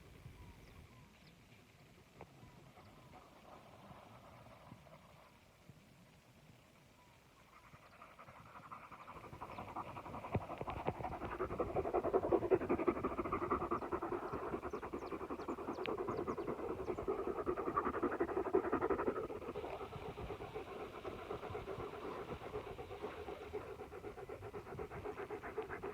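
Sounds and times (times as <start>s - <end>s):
dog panting: 7.6s - 25.9s.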